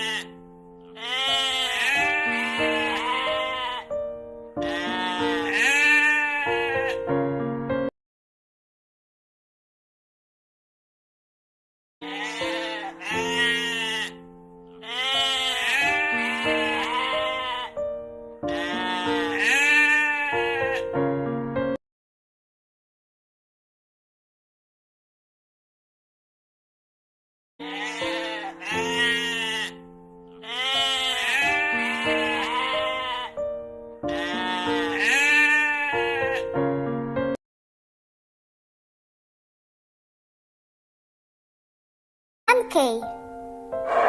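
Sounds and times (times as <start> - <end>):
animal bleating: 0.0 - 4.0, 4.6 - 7.1, 12.0 - 21.0, 27.6 - 36.6, 43.8 - 44.0
background music with held notes: 0.0 - 7.9, 12.0 - 21.8, 27.6 - 37.4, 42.6 - 44.0.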